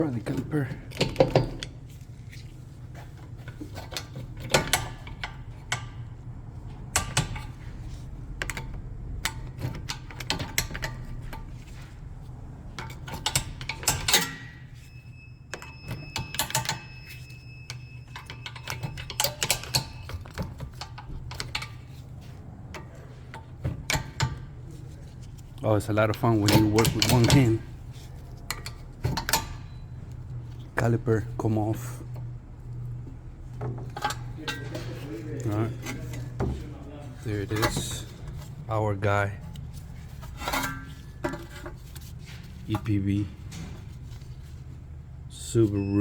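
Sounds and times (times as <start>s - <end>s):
steady low hum: 0.0s - 46.0s
metal tools knocking on caliper: 0.2s - 1.8s, 33.5s - 38.5s.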